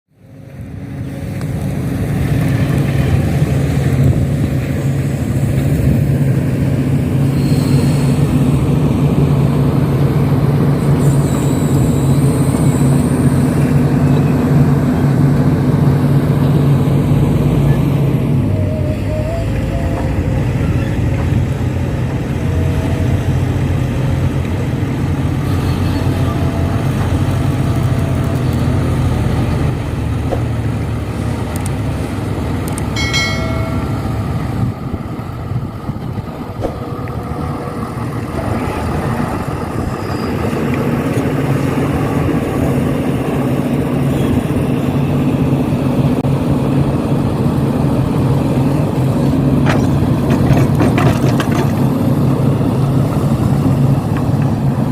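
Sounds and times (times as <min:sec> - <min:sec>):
diesel engine running under load: 0:00.1 - 0:54.9
brief pitched tone: 0:17.7 - 0:21.2, 0:33.0 - 0:34.6.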